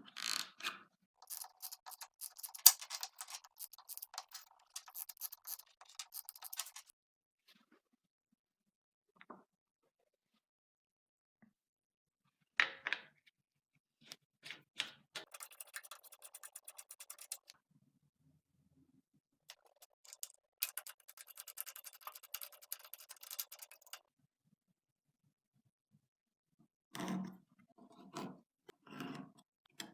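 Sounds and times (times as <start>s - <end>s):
rapid fine hand tool clicking: 1.2s - 6.9s, 15.2s - 17.5s, 19.7s - 24.0s.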